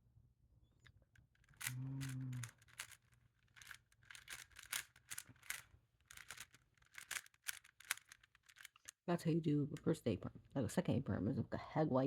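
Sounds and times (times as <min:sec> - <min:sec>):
plastic puzzle cube clicking: 0:01.3 - 0:09.0.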